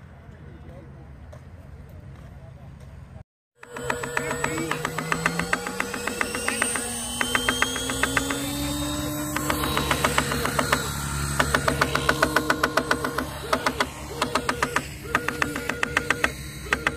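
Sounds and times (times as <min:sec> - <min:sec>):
machine-gun sound effect: 0:03.6 - 0:16.9
model motor humming: 0:03.6 - 0:16.9.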